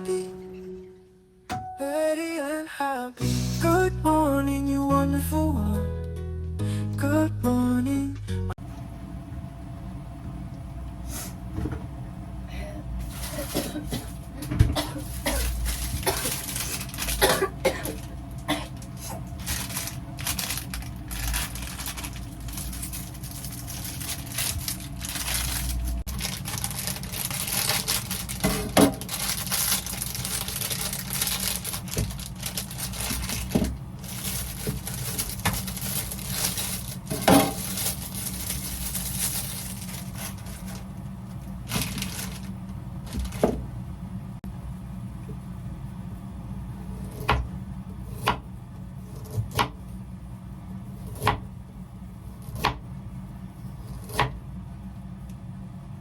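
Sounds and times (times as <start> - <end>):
steady low hum: 8.6 - 56.0
rustling: 18.9 - 43.5.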